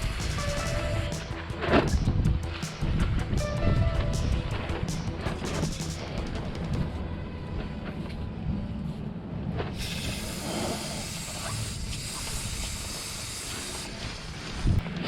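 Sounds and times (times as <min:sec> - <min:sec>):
aerosol spray can hissing: 0:09.8 - 0:13.9.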